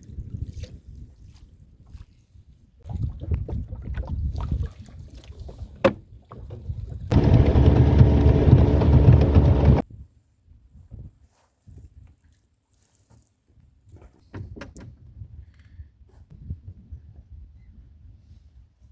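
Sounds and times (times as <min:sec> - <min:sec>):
low rumbling water: 0:02.8 - 0:09.8
boat motor running: 0:07.1 - 0:09.8.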